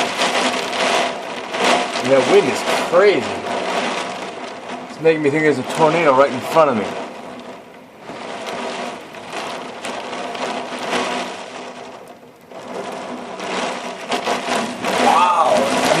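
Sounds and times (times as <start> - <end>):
rain: 0.0 - 16.0
storm wind gusting: 0.0 - 16.0.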